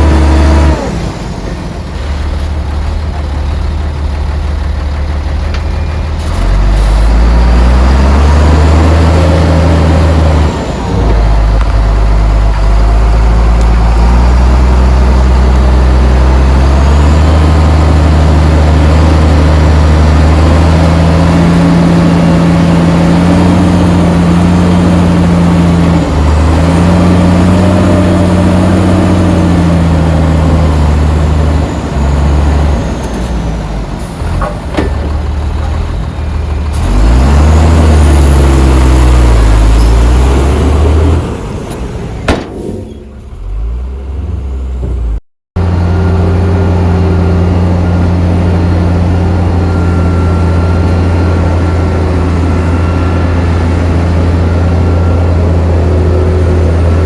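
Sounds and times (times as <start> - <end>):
heavy diesel machinery engines: 0.0 - 57.0
sharp knocks: 42.3 - 43.2.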